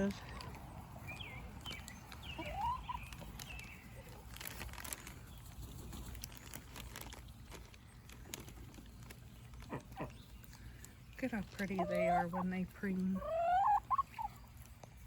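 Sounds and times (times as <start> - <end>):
ducks and geese calling: 1.2 - 4.3, 9.6 - 10.2, 11.6 - 14.5.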